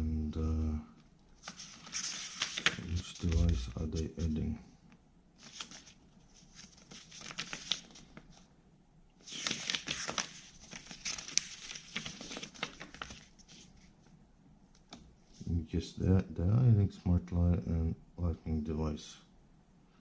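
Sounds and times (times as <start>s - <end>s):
paper rustling and crinkling: 1.4s - 4.4s, 5.4s - 8.5s, 9.2s - 14.1s.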